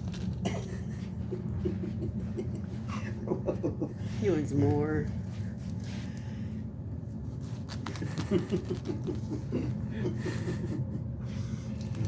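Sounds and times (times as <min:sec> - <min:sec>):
soft chuckling: 0:00.4 - 0:04.2, 0:07.8 - 0:11.5.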